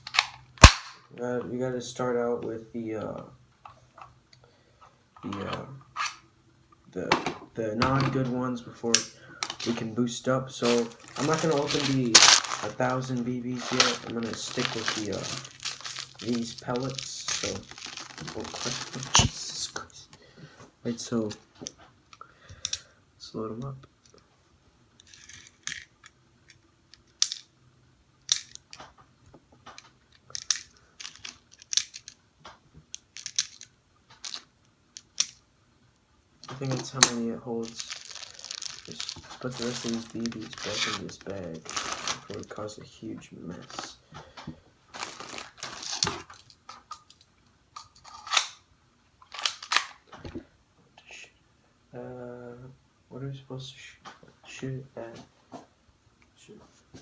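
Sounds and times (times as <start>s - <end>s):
plastic clicks and rustles: 10.6s - 19.5s, 28.2s - 35.4s, 36.4s - 42.6s, 43.6s - 48.6s, 49.2s - 50.4s
bbs clicking into magazine: 36.4s - 42.4s.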